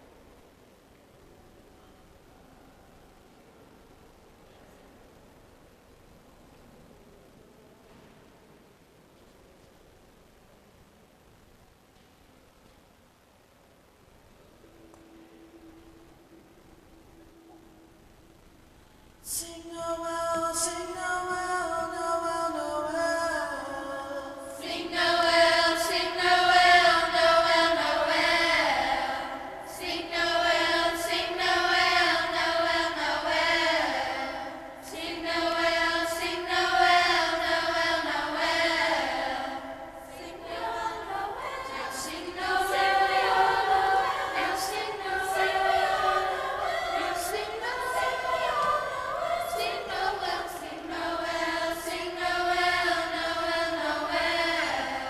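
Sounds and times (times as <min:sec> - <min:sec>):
children's choir singing: 0:20.5 - 0:55.0.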